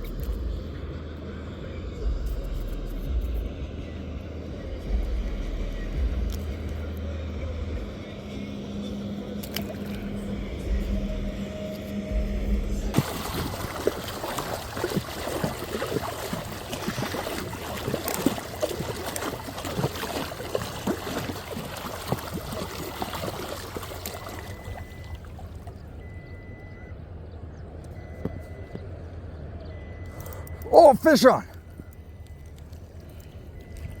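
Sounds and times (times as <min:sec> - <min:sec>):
motor hum: 0:00.0 - 0:30.9
water trickling and splashing: 0:09.4 - 0:11.0, 0:12.8 - 0:26.7.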